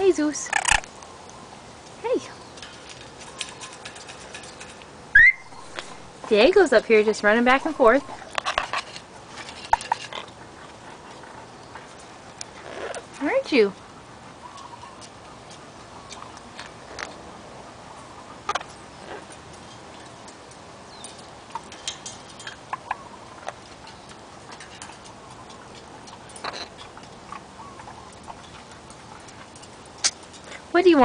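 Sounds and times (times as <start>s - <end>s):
steady low hiss: 0.0s - 31.0s
parrot claws and beak tapping: 18.5s - 30.6s
soft squeaks: 21.0s - 31.0s.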